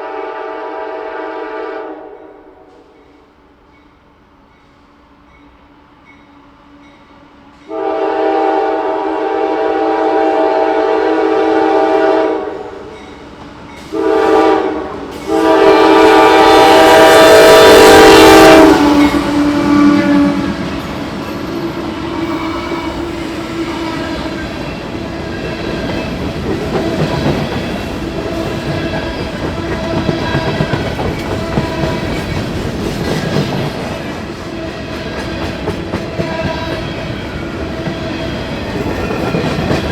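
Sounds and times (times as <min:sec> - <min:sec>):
train horn blasts: 0:00.0 - 0:03.0, 0:07.7 - 0:12.8, 0:13.8 - 0:25.6, 0:28.3 - 0:32.3, 0:36.1 - 0:37.1
train wheels clattering on rails: 0:12.9 - 0:14.3, 0:15.0 - 0:39.9
locomotives passing: 0:15.0 - 0:39.9.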